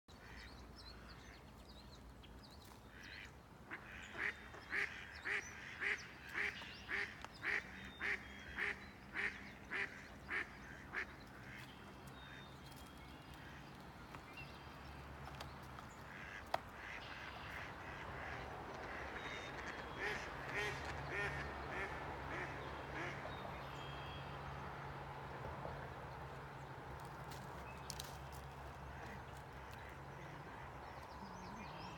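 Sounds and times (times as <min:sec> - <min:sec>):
duck quacking: 0:03.0 - 0:11.6, 0:16.1 - 0:23.2.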